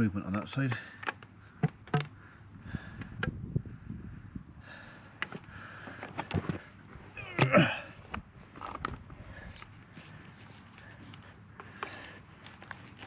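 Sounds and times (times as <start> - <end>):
knocks and clicks of plastic fittings: 1.0 - 2.1.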